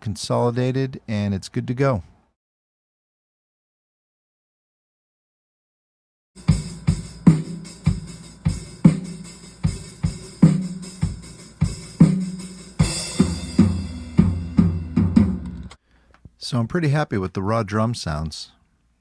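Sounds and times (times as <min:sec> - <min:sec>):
kick and snare drum beat: 0:06.4 - 0:15.4.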